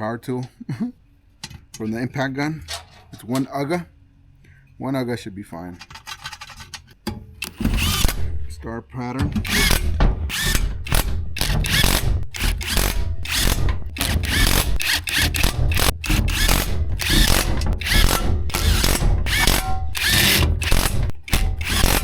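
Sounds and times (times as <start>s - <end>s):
impact gun rattling bursts: 7.4s - 8.6s, 9.3s - 22.0s.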